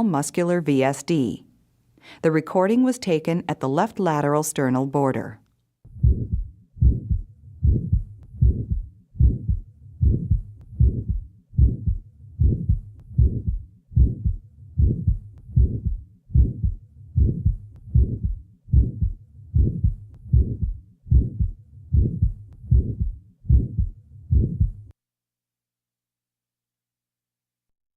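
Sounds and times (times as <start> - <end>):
heart murmur: 5.9 - 24.9
heartbeat: 5.9 - 24.9.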